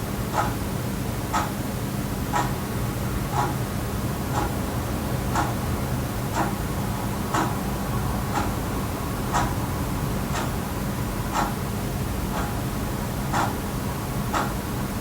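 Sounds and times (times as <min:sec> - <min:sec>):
wall clock ticking: 0:00.3 - 0:00.6, 0:01.3 - 0:01.5, 0:02.3 - 0:02.6, 0:03.3 - 0:03.6, 0:04.3 - 0:04.6, 0:05.3 - 0:05.6, 0:06.3 - 0:06.6, 0:07.3 - 0:07.6, 0:08.3 - 0:08.6, 0:09.3 - 0:09.6, 0:10.3 - 0:10.6, 0:11.3 - 0:11.6, 0:12.3 - 0:12.6, 0:13.3 - 0:13.6, 0:14.3 - 0:14.6.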